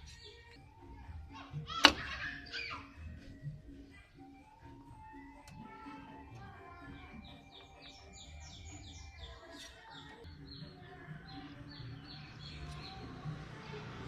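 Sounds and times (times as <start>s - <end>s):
small bird chirping: 0.0s - 0.9s, 6.7s - 13.4s
faint background music: 0.0s - 14.0s.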